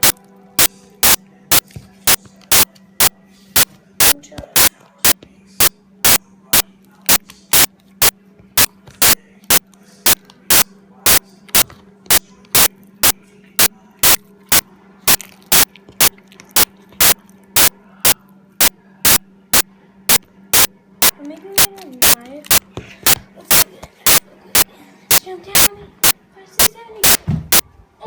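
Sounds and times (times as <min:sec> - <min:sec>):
faint steady hum: 0:00.0 - 0:28.0
sharp clicks: 0:07.1 - 0:07.7, 0:20.1 - 0:21.2.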